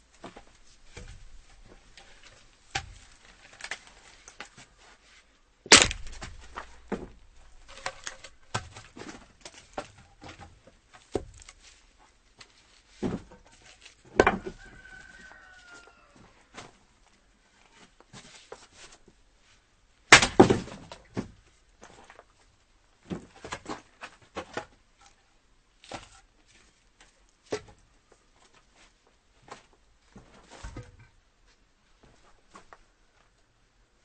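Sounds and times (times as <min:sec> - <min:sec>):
split wood clattering: 0:00.3 - 0:04.6, 0:05.7 - 0:11.6, 0:20.1 - 0:21.3
axe chopping firewood: 0:02.0 - 0:03.1, 0:05.7 - 0:10.5, 0:14.1 - 0:14.6, 0:20.1 - 0:21.3
rooster crowing: 0:14.4 - 0:16.3.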